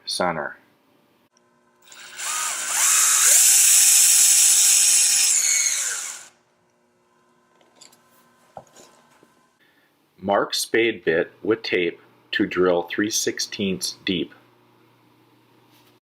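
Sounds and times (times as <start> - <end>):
power drill whining: 1.8 - 6.3.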